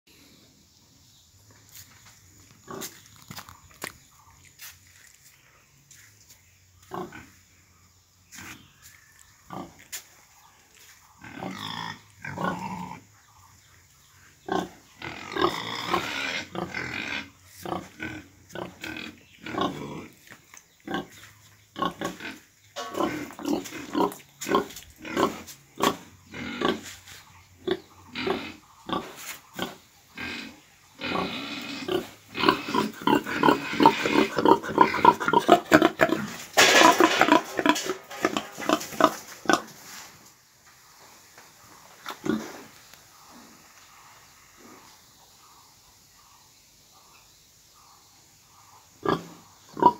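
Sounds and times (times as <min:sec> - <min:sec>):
pigs grunting: 0:11.2 - 0:13.1, 0:14.4 - 0:21.2, 0:21.8 - 0:27.0, 0:27.6 - 0:39.7, 0:42.1 - 0:42.8, 0:49.0 - 0:49.9
harsh pig call: 0:27.7 - 0:39.7.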